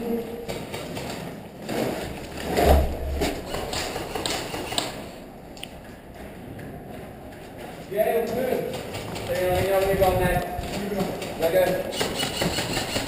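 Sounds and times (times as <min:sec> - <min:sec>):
heavy thud: 0:02.4 - 0:03.5.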